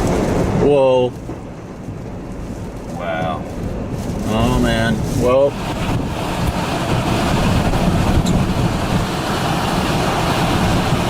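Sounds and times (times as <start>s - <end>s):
storm wind on microphone: 0.0s - 11.0s.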